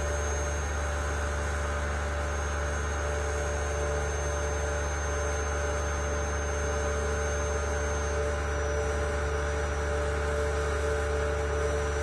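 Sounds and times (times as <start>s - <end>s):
vacuum pump humming: 0.0s - 12.0s.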